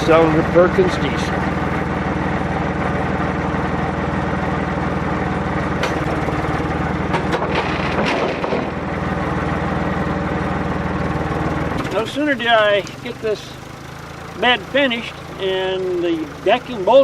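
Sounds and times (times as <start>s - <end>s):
tractor diesel engine running: 0.0s - 17.0s
sharp knocks: 7.0s - 8.8s.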